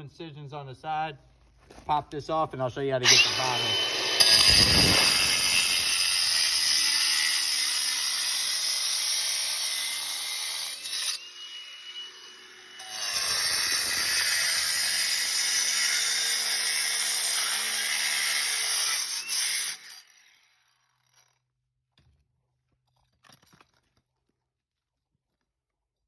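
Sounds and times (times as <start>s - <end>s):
power tool grinding whine: 3.0s - 21.3s.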